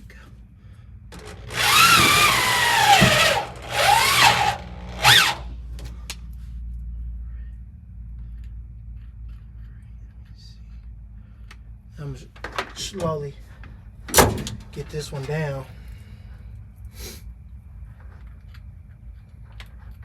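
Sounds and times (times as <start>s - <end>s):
power drill drilling into metal: 1.2s - 5.5s.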